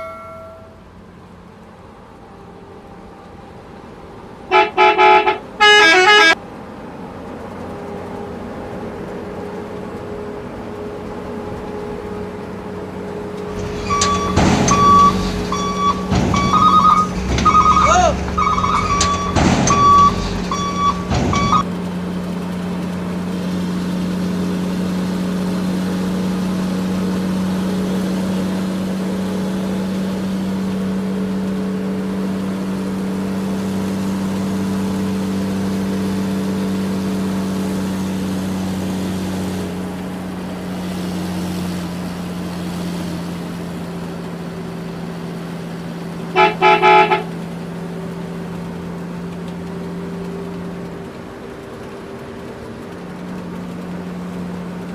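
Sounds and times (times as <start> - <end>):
vehicle engine droning: 0.0 - 54.9
horn toots: 4.5 - 6.4, 13.4 - 21.6, 46.3 - 47.4.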